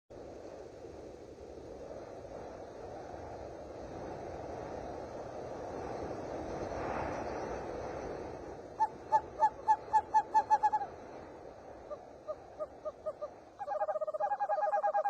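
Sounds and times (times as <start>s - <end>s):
hiss of noise: 0.2s - 13.6s
bird-like hooting calls: 8.8s - 11.0s, 11.8s - 15.0s.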